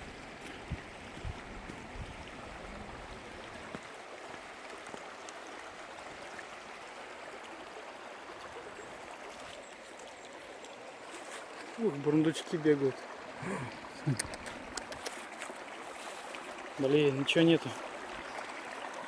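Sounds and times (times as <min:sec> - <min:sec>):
wind buffeting microphone: 0:00.0 - 0:03.8
creek water rushing: 0:00.0 - 0:19.0.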